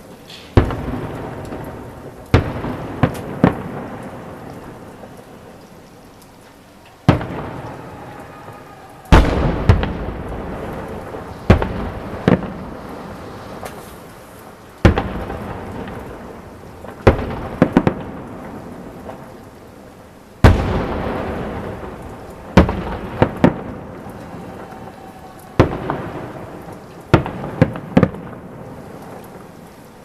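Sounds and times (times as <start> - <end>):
fireworks booming: 0.0 - 5.6, 7.0 - 19.7, 20.4 - 29.6
rumbling echo: 7.1 - 19.4, 20.5 - 28.7.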